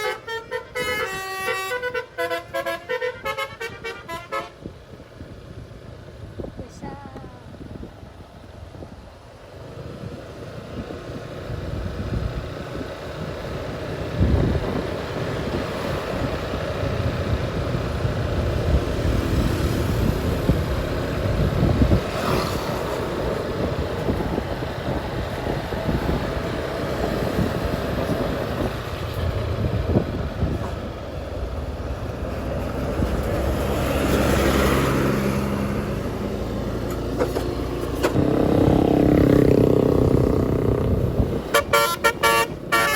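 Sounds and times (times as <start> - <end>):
bus diesel engine running: 0.0 - 42.9.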